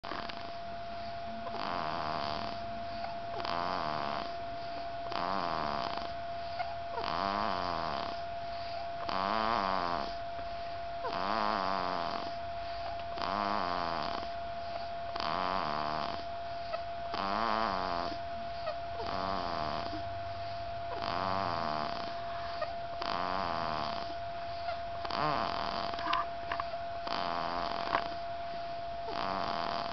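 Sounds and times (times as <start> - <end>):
baby snoring: 0.0 - 28.3, 29.0 - 29.9
steady faint tone: 0.1 - 7.0, 7.6 - 9.1, 10.1 - 11.1, 12.2 - 13.2, 15.9 - 25.1, 25.7 - 29.1.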